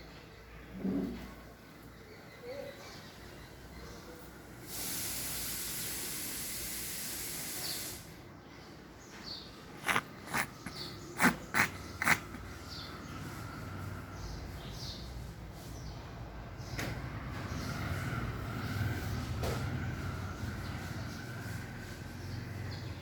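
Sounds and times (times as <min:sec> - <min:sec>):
steady hiss: 0:04.6 - 0:08.2
cat coughing: 0:09.8 - 0:12.6.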